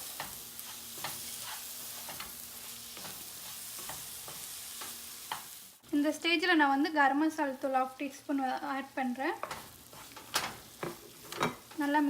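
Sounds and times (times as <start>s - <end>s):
spoon scraping and tapping pan: 0.0s - 5.6s, 9.4s - 11.9s
masala sizzling in hot oil: 0.0s - 12.0s.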